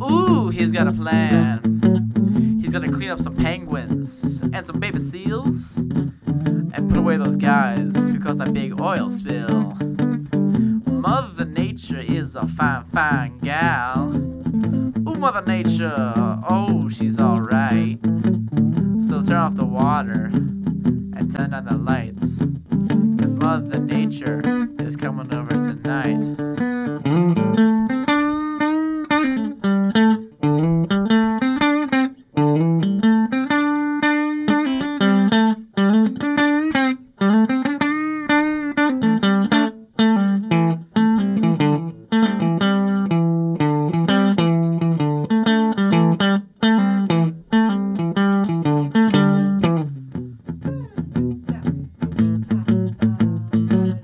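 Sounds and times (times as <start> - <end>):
electric guitar solo: 0.0 - 54.0.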